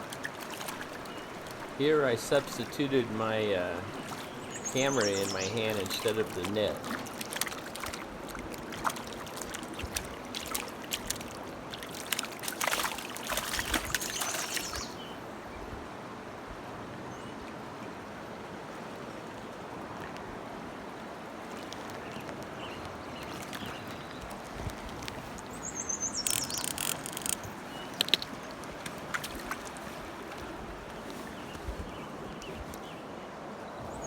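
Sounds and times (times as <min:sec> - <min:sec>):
fish splashing in water: 0:00.0 - 0:15.2, 0:23.3 - 0:30.6
steady hiss of water: 0:00.0 - 0:15.6.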